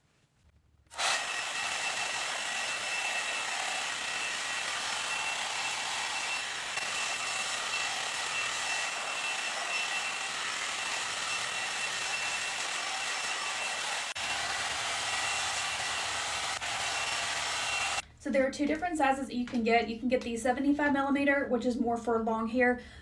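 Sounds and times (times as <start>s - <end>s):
blowdryer fan whine: 0.9s - 18.0s.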